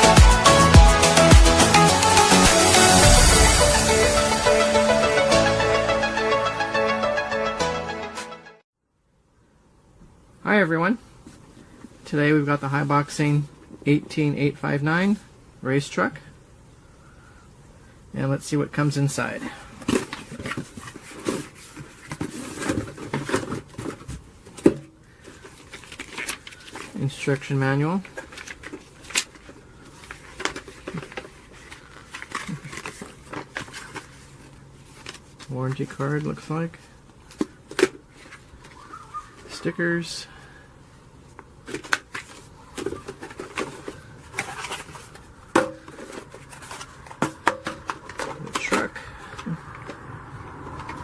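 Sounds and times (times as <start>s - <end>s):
cardboard packaging rustling: 19.7s - 27.1s, 28.0s - 39.6s, 41.2s - 49.0s.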